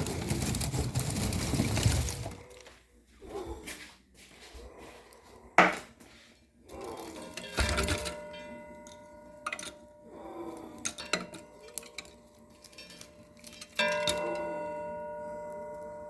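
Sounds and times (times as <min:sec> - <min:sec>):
metal pieces clanking: 0:06.9 - 0:09.8, 0:10.8 - 0:14.2.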